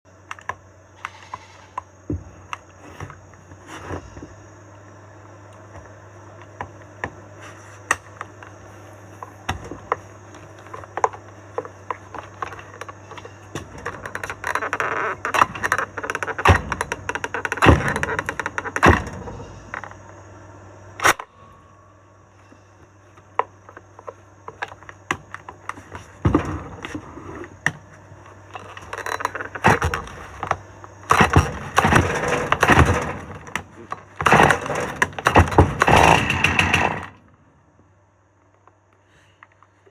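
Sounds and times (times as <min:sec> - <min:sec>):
steady low hum: 0:00.1 - 0:39.9
chainsaw being handled: 0:07.3 - 0:19.9, 0:23.2 - 0:37.2.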